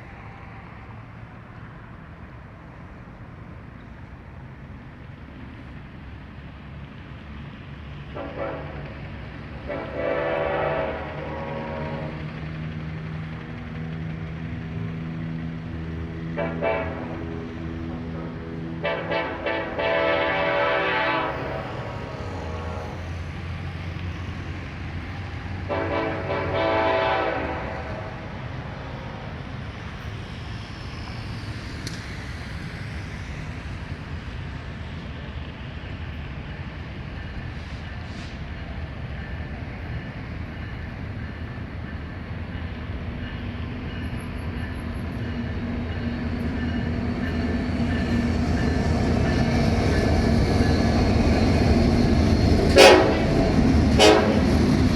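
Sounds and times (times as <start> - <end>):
train rumble: 0.0 - 54.9
locomotive air horn blasts: 8.2 - 8.9, 9.7 - 12.2, 16.4 - 17.5, 18.2 - 23.1, 25.7 - 28.1, 52.7 - 54.6.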